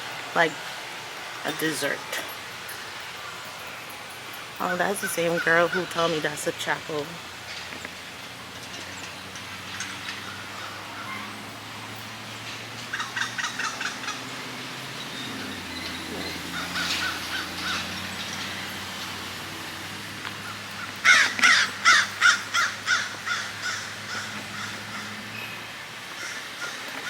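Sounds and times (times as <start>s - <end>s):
crow cawing: 20.8s - 25.1s, 26.1s - 26.9s.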